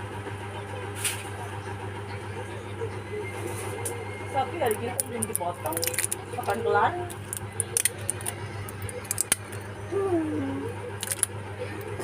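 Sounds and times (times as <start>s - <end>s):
steady low hum: 0.0s - 12.0s
person murmuring: 9.9s - 10.8s.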